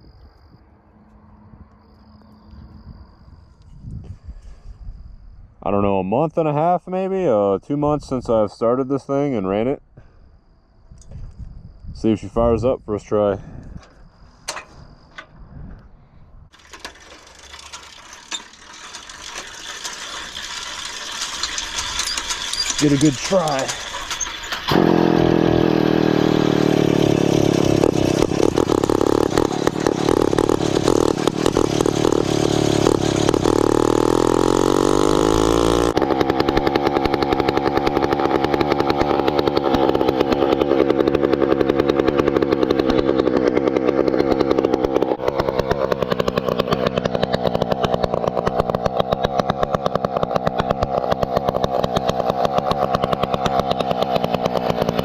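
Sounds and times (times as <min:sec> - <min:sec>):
small engine running: 0:16.5 - 0:55.0.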